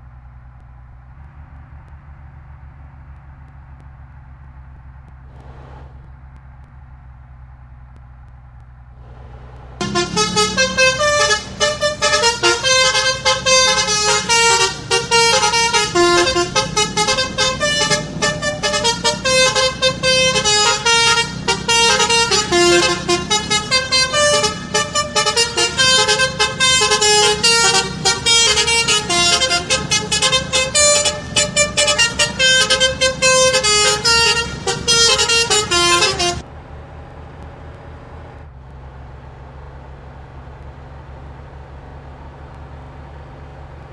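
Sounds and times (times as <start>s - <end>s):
low steady rumble: 0.0s - 43.9s
musical bus horn melody: 9.0s - 36.5s.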